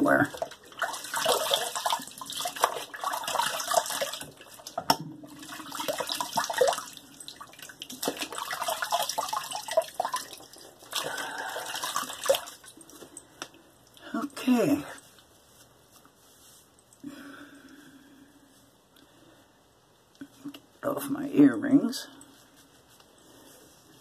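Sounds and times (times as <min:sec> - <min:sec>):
tap water splashing in sink: 0:00.3 - 0:13.1.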